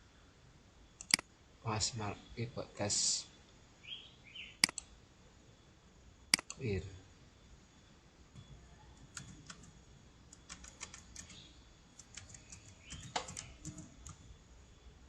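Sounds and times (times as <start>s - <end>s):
computer keyboard typing: 1.0s - 1.2s, 9.0s - 9.7s, 10.3s - 11.4s, 12.0s - 14.2s.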